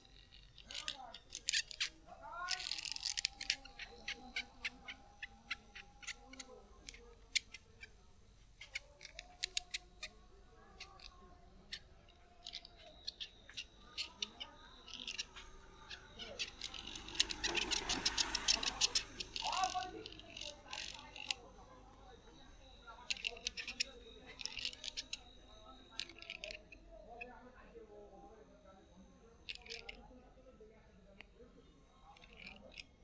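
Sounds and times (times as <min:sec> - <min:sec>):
faint voices: 0:00.0 - 0:33.0.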